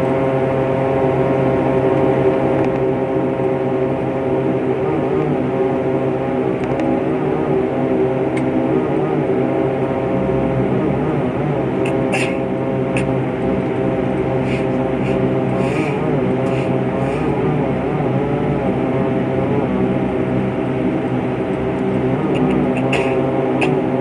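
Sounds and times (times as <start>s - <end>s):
propeller airplane engines droning: 0.0s - 24.0s.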